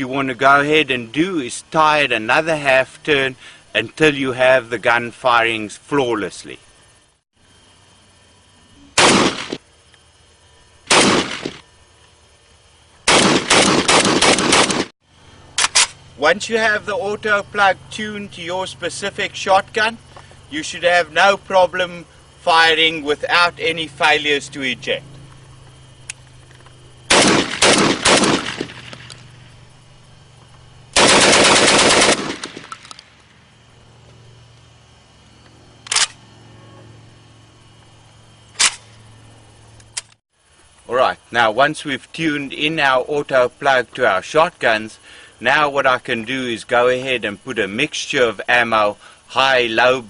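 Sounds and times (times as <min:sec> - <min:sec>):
shotgun shots: 0:09.0 - 0:09.6, 0:10.9 - 0:11.6, 0:13.1 - 0:14.9, 0:27.1 - 0:29.1, 0:31.0 - 0:33.0.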